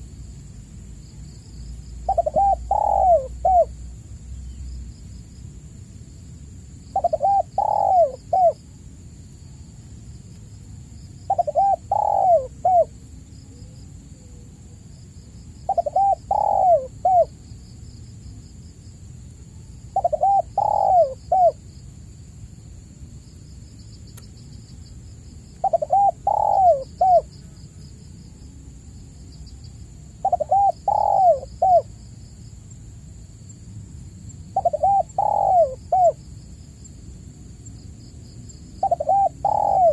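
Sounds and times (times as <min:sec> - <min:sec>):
dove cooing: 0:02.0 - 0:03.8, 0:06.9 - 0:08.6, 0:11.3 - 0:12.9, 0:15.7 - 0:17.4, 0:20.0 - 0:21.6, 0:25.6 - 0:27.6, 0:30.2 - 0:31.9, 0:34.6 - 0:36.2, 0:38.8 - 0:39.9.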